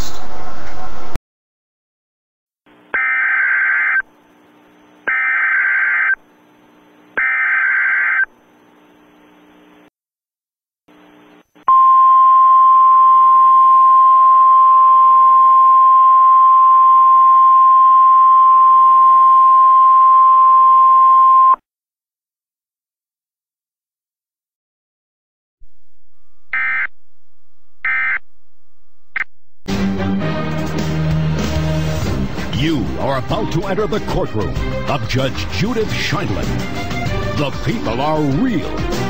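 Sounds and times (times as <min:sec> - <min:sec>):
steady attention tone: 0:25.6 - 0:29.8.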